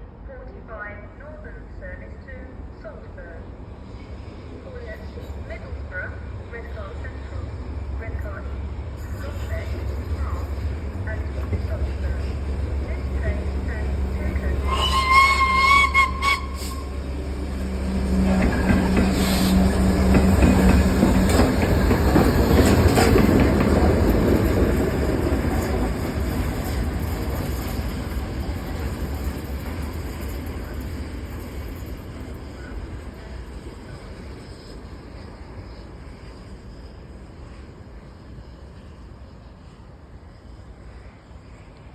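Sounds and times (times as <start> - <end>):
diesel locomotive engine drone: 0.0 - 41.9
high train whistle: 13.0 - 20.0.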